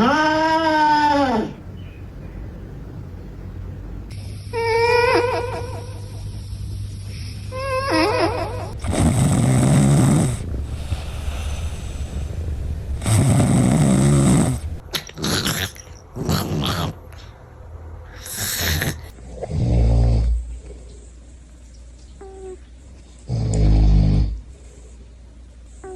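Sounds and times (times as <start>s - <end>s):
cats snoring: 6.8s - 12.0s, 13.0s - 17.3s, 18.1s - 21.4s, 23.2s - 25.0s.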